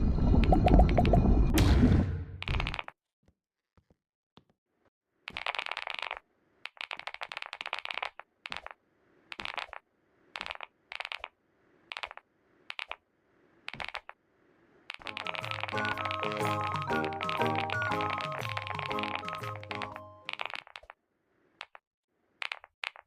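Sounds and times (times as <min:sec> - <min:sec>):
music: 0:15.1 - 0:20.3.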